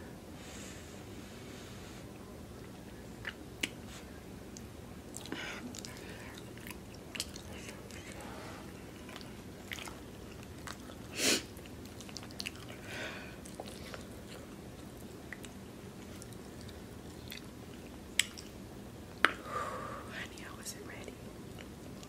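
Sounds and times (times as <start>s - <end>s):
person chewing food: 4.5s - 18.6s.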